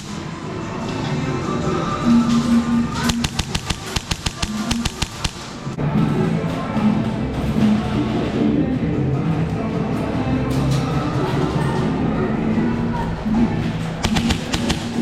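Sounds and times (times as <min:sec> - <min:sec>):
music with steady beat: 0:02.0 - 0:07.0, 0:14.0 - 0:15.0
rapid sharp cracks: 0:03.0 - 0:05.7, 0:14.0 - 0:15.0.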